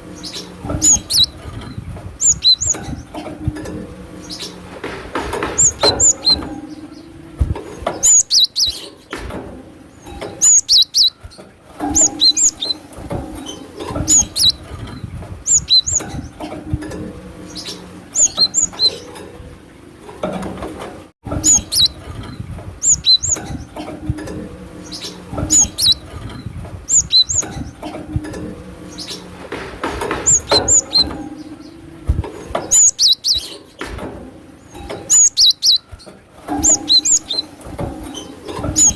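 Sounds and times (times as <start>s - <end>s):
bird chirping: 0.0s - 3.2s, 4.2s - 4.7s, 5.4s - 9.2s, 9.9s - 16.5s, 17.4s - 19.2s, 21.4s - 23.9s, 24.8s - 27.9s, 30.1s - 33.9s, 34.6s - 38.9s.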